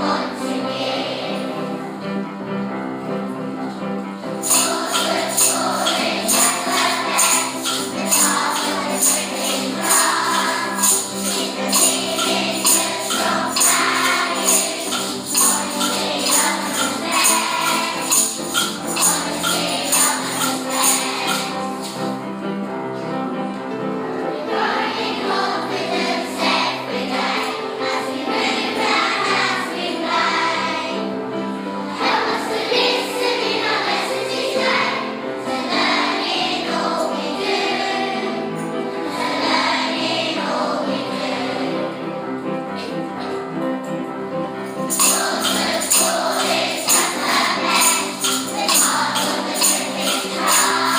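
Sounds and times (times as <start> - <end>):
choir singing: 0.0 - 2.2, 4.2 - 22.2, 24.3 - 42.4, 44.9 - 50.9
tambourine shaking: 4.0 - 22.7, 37.0 - 40.0, 42.7 - 50.9.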